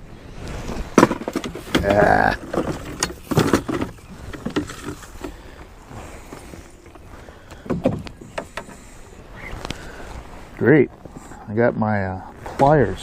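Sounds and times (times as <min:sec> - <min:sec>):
gear clattering in a boat: 0:00.8 - 0:09.2.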